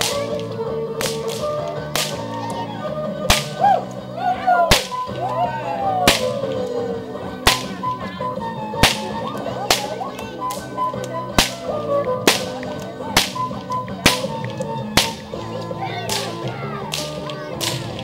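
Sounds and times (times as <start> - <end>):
background music: 0.0 - 18.0
bullwhip cracks: 1.0 - 2.3, 3.3 - 3.7, 4.7 - 5.1, 6.0 - 6.5, 7.4 - 7.8, 8.8 - 10.7, 11.4 - 15.3, 16.1 - 18.0.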